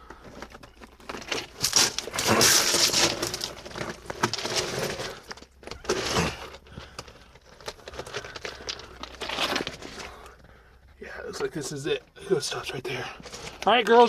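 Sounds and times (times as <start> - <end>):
loose rock and glass crunching: 0.0 - 14.0
scuffs and scrapes on rock: 0.2 - 10.4.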